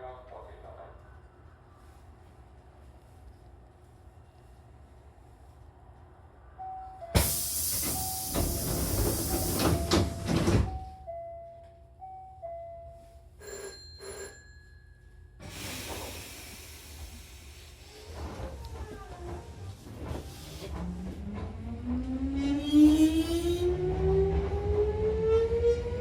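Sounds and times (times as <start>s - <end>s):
pneumatic door air hiss: 7.2s - 10.7s, 15.4s - 18.3s.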